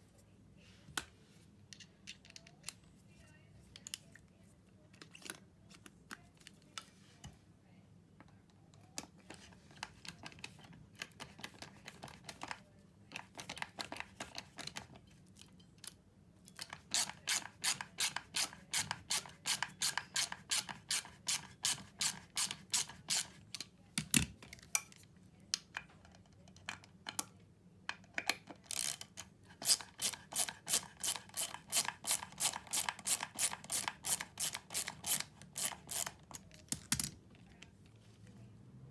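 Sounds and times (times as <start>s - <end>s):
ratchet screwdriver clicking: 16.9s - 23.3s, 29.6s - 36.4s.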